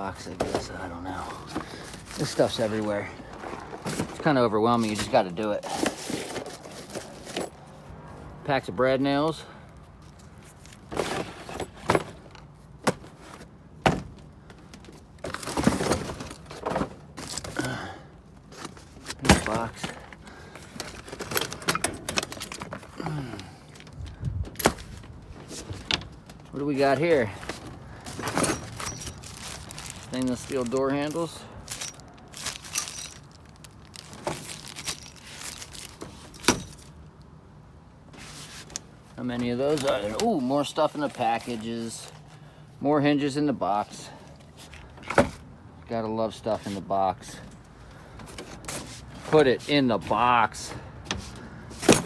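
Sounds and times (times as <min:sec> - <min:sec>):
boxes clattering and scraping: 0:00.0 - 0:07.9, 0:10.0 - 0:37.0, 0:38.1 - 0:42.4, 0:43.2 - 0:45.5, 0:46.3 - 0:52.0
metal door handles clinking: 0:21.0 - 0:22.9, 0:36.2 - 0:36.9.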